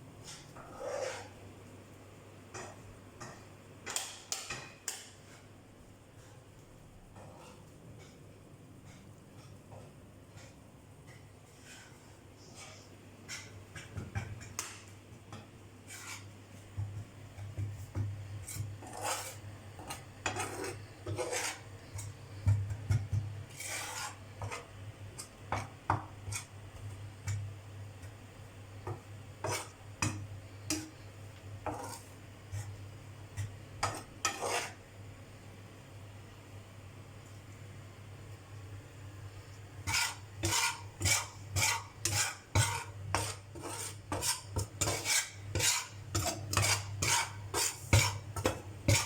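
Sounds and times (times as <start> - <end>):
metal ladle scraping in a pan: 0.2 - 1.4, 15.8 - 16.4, 18.4 - 22.1, 23.5 - 25.6, 29.4 - 29.8, 31.6 - 32.8, 33.4 - 34.8, 39.8 - 49.0.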